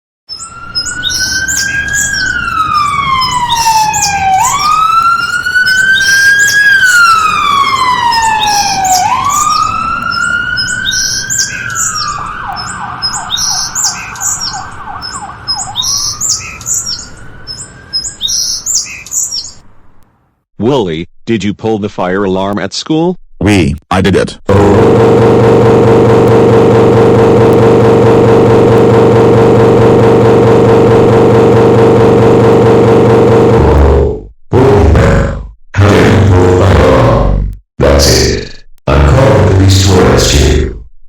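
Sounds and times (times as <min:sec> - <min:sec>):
electronic siren wailing: 0:00.3 - 0:18.8, 0:24.5 - 0:35.1.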